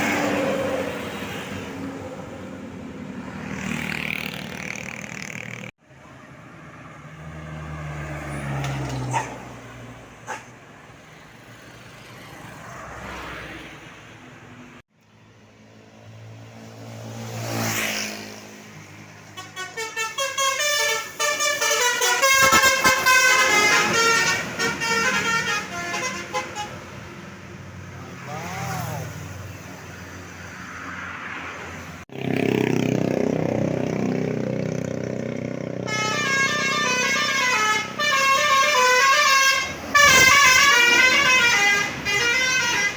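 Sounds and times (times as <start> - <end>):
road vehicles passing: 0.0 - 42.9
bus musical horn melody: 19.3 - 27.0, 35.7 - 42.9.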